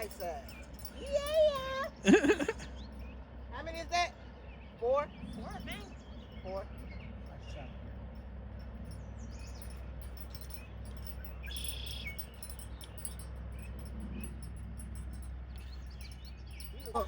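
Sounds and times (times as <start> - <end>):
low rumble: 2.4 - 17.0.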